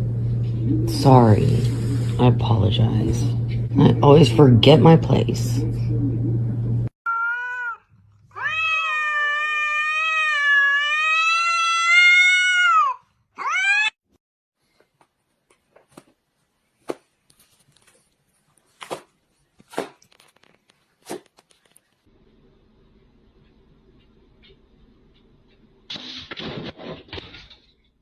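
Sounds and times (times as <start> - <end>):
cat meowing: 7.1 - 14.0.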